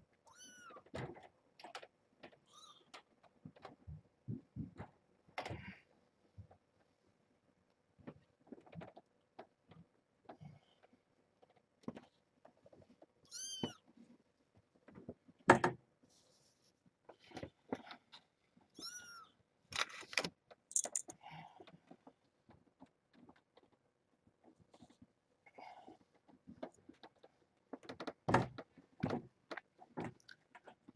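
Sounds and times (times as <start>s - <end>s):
clicks and rustles: 19.7s - 25.2s.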